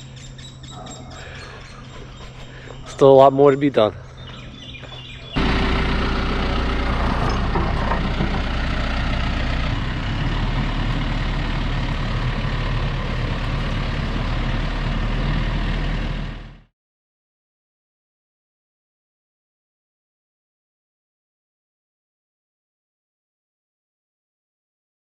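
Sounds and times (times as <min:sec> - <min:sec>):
engine running: 0:04.0 - 0:16.7.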